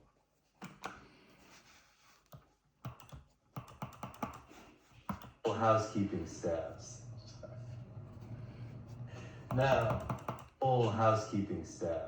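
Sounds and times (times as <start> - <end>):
controller buttons clicking: 2.9 - 4.5, 9.5 - 10.5.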